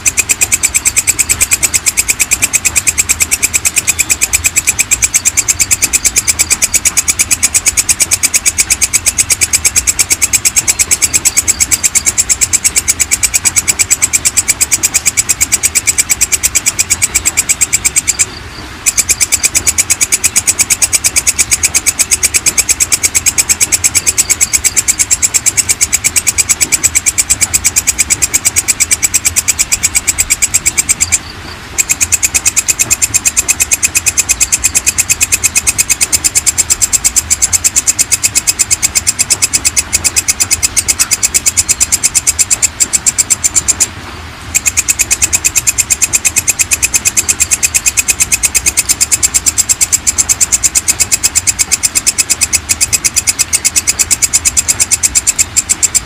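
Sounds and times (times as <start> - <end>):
katydid rapid clicking call: 0.0 - 56.0.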